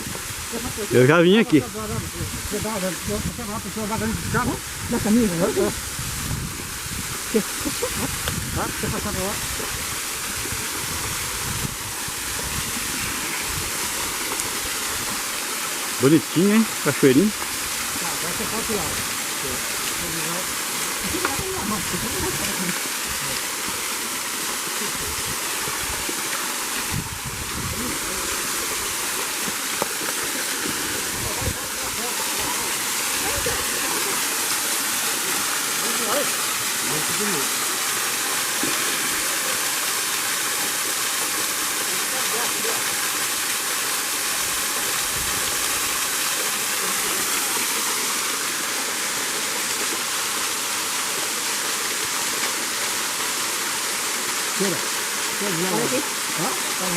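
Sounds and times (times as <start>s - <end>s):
waterfall rushing: 0.0s - 56.9s.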